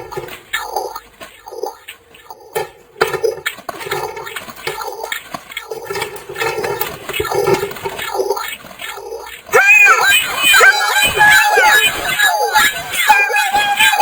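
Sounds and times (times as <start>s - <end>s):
distorted warbling voice: 4.0s - 14.0s.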